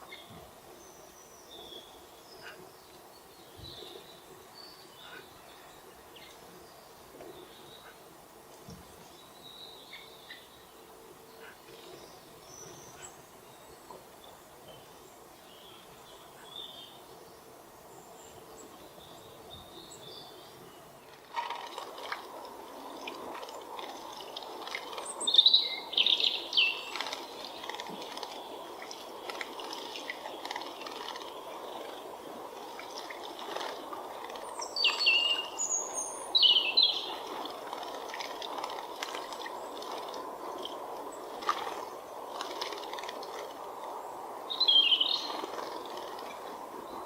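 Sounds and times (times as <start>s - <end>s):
songbirds chirping: 0.0s - 47.0s
rushing water: 21.1s - 47.0s.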